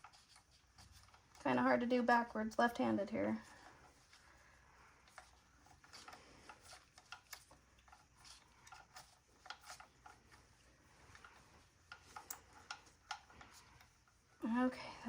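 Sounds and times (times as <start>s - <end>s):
light rubbing: 0.0s - 15.0s
small clicks and ticks: 3.4s - 14.4s.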